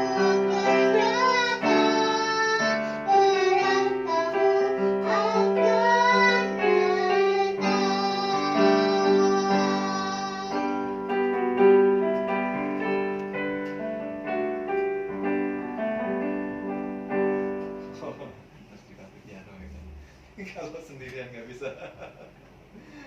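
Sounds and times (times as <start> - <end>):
person singing: 0.0 - 10.8
piano playing: 0.0 - 18.5.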